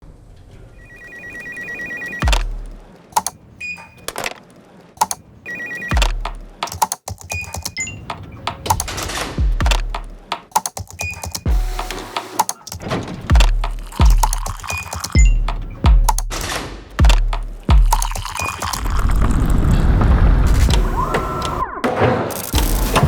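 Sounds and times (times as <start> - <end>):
sharp rhythmic clicks: 2.2 - 4.4, 5.0 - 19.0
deep thumps dropping in pitch: 9.4 - 10.2.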